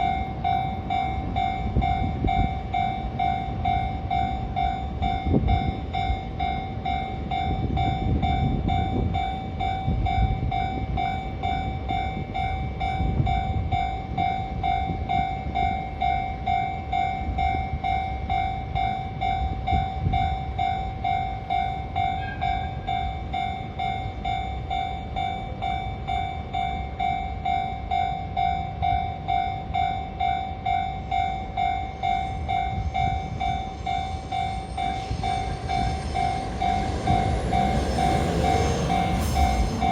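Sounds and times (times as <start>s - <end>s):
freight train rumbling and clattering: 0.0s - 39.9s
level-crossing warning bell: 0.0s - 39.9s.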